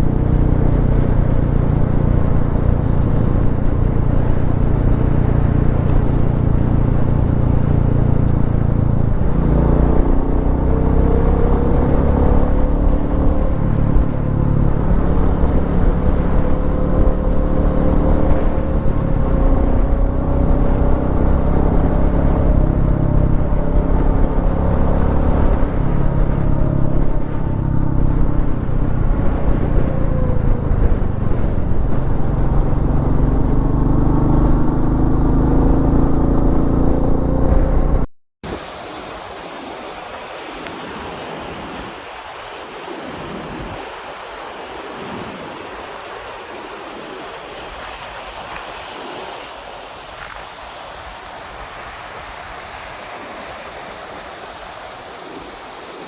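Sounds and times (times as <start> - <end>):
motorcycle engine running: 0.0 - 38.1
steady rushing noise: 0.0 - 56.0
wind noise on microphone: 0.0 - 56.0.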